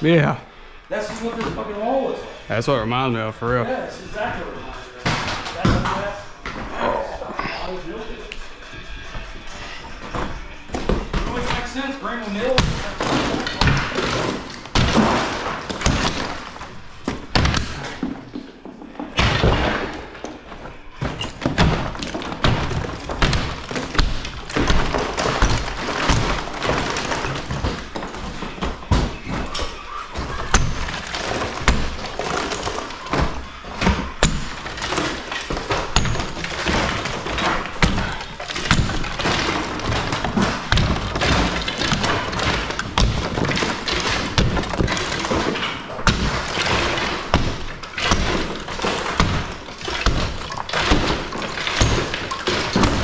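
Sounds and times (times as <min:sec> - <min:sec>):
heavy thuds and cracks: 0:10.1 - 0:53.0.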